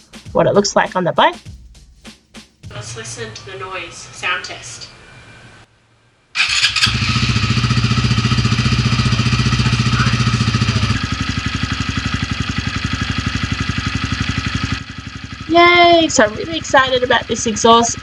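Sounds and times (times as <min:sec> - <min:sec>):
motorcycle engine idling: 0:06.4 - 0:18.0.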